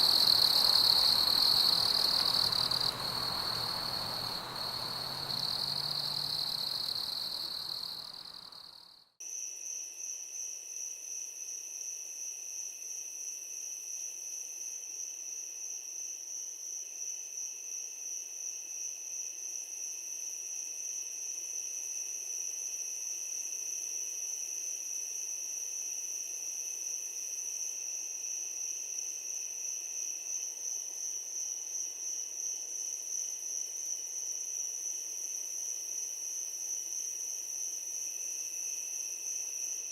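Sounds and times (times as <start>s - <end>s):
crickets chirring: 0.0s - 8.8s
pulsing cricket chorus: 0.0s - 39.9s.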